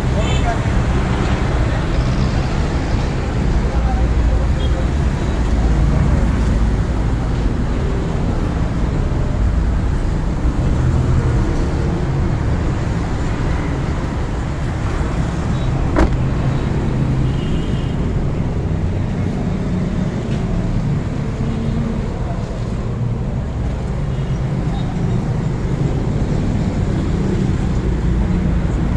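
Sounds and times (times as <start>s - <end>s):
car engine rumbling: 5.9s - 17.4s.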